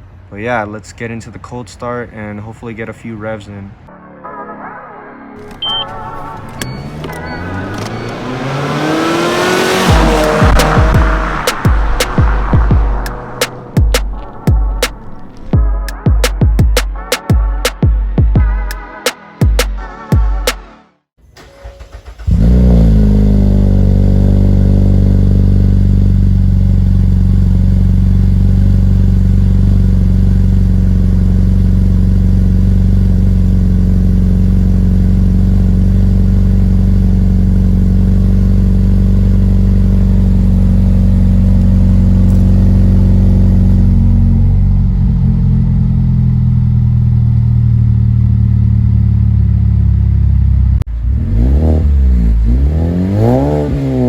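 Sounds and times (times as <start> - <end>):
car engine idling: 5.4 - 15.6, 21.4 - 54.0.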